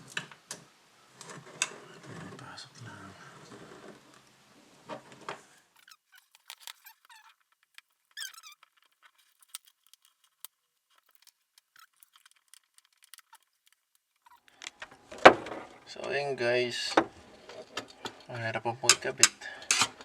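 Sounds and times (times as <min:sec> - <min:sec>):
rubber gasket squeak: 0:05.6 - 0:14.6
faucet parts clicking: 0:05.8 - 0:14.8.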